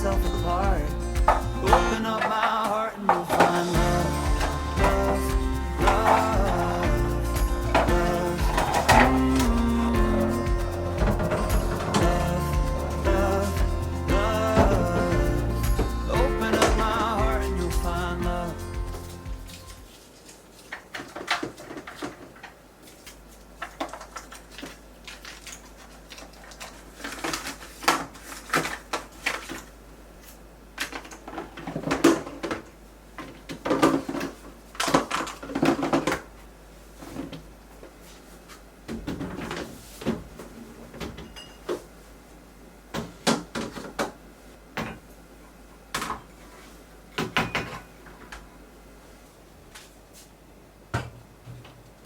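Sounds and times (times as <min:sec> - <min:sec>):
containers clattering in fridge: 0:00.0 - 0:17.6, 0:30.8 - 0:36.3.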